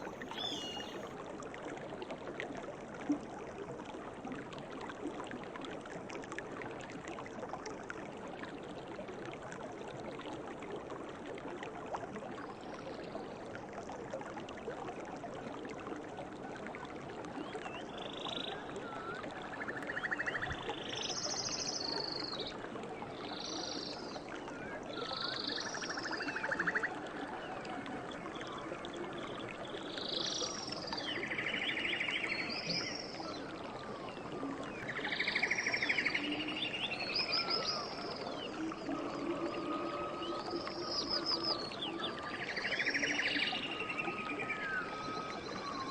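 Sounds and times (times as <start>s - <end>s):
short trilled animal calls: 0.0s - 1.0s
stream running: 0.0s - 45.9s.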